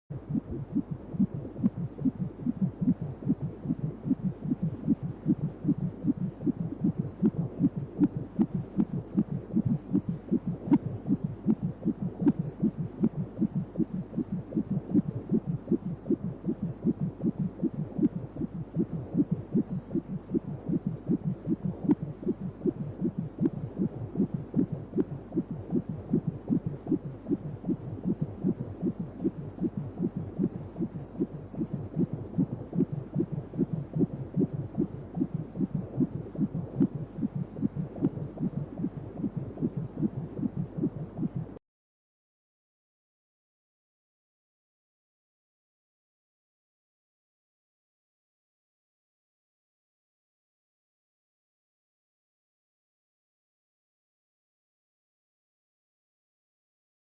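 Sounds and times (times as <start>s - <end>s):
fetal heartbeat on doppler: 0.1s - 41.6s.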